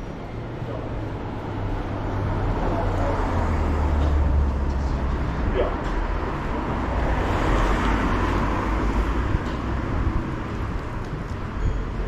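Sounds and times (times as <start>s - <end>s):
low traffic rumble: 0.0s - 12.0s.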